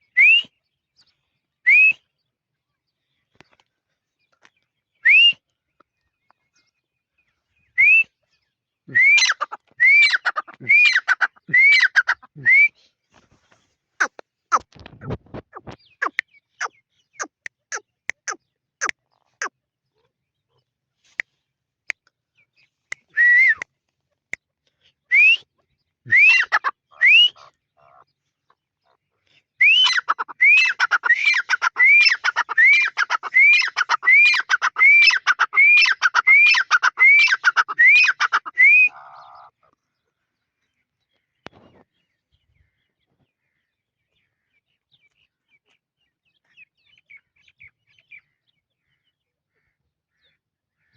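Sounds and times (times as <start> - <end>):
francolin calling: 29.6 - 39.5.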